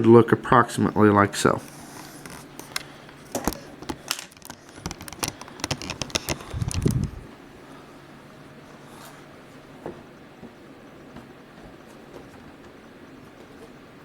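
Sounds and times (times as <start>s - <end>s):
hands clicking and tapping laptop parts: 2.2s - 6.9s
low handling rumble: 6.4s - 7.4s.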